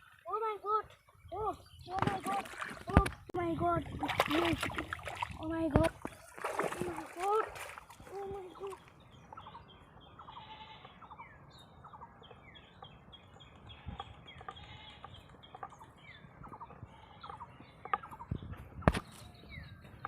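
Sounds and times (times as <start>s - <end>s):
bird chirps: 8.1s - 20.0s.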